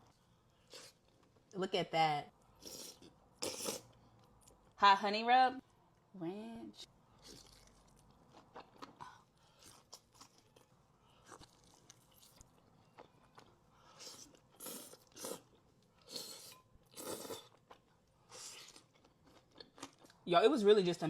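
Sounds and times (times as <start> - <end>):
crunching and chewing: 7.2 - 16.2, 16.9 - 20.2.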